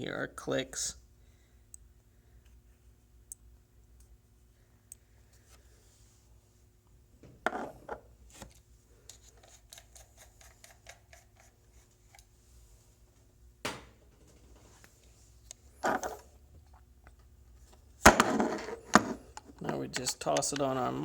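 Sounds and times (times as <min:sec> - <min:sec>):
handling knock: 0:13.6 - 0:14.4.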